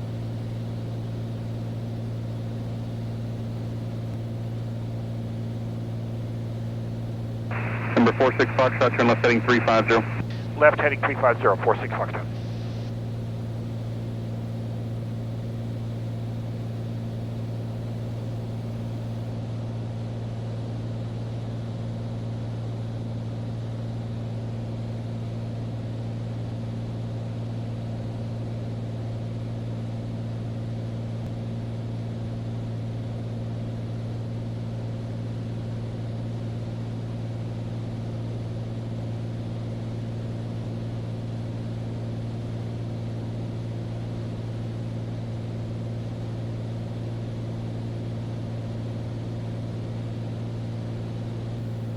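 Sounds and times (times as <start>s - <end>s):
airplane engine cabin drone: 0.0s - 19.3s.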